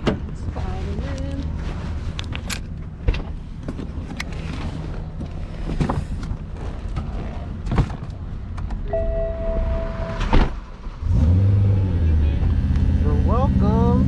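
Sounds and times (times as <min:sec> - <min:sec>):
car low rumble: 0:00.0 - 0:14.0
electronic chime tone: 0:08.9 - 0:10.3.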